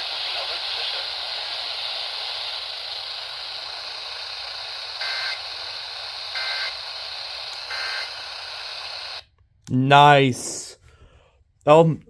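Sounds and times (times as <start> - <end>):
radio static hiss: 0.0 - 9.2.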